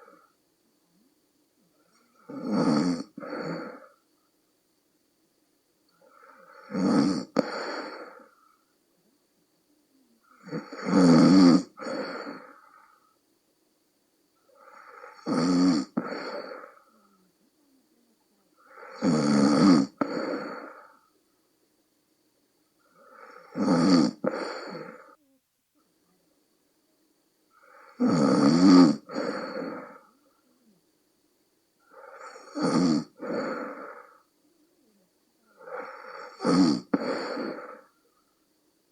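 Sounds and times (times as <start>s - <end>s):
person snoring loudly: 2.2s - 4.0s, 6.0s - 8.3s, 10.3s - 12.9s, 14.6s - 16.8s, 18.6s - 21.0s, 23.0s - 25.2s, 27.6s - 30.1s, 31.9s - 34.2s, 35.6s - 37.9s.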